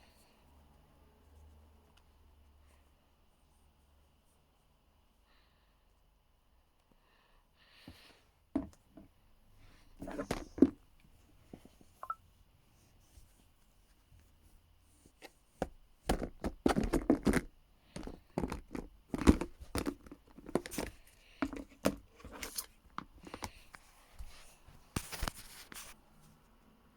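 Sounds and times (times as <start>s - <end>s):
objects knocking and clicking: 15.6s - 22.1s.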